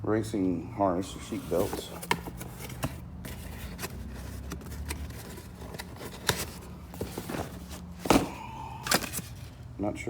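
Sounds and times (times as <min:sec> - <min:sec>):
clicks and rustles of handling: 0:01.2 - 0:09.6.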